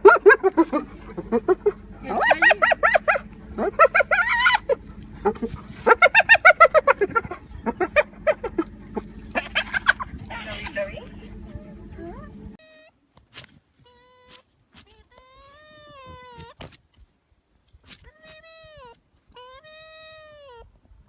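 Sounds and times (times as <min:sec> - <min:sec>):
animal calling in pulsed notes: 0:00.0 - 0:12.9.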